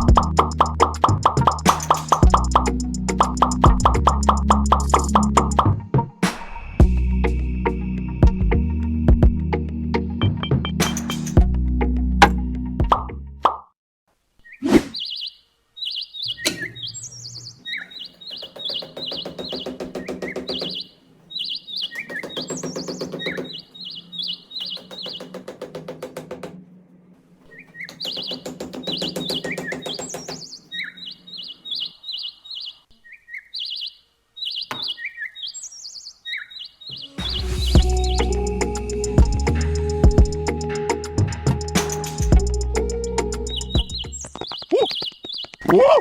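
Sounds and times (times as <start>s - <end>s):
rapid high bird-like chirps: 0.0s - 5.7s, 14.4s - 25.4s, 27.5s - 39.0s, 41.6s - 45.9s
looping background music: 0.0s - 13.4s, 37.2s - 44.4s.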